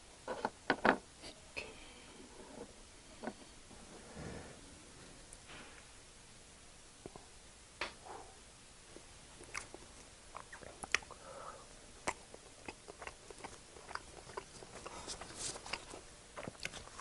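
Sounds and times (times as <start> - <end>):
person chewing food: 9.4 - 11.2, 12.0 - 17.0
wet mouth clicks and smacks: 9.4 - 11.2.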